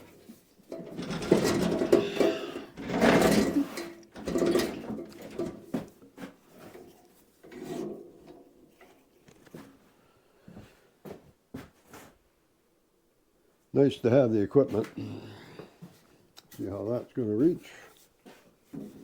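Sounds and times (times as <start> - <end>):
bandsaw scraping and rattling: 0.0 - 8.6.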